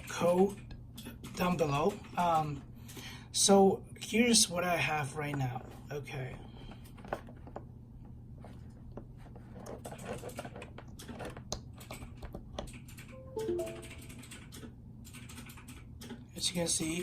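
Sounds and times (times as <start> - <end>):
computer keyboard clicking: 9.9 - 16.2
electronic chime falling notes: 13.2 - 14.2.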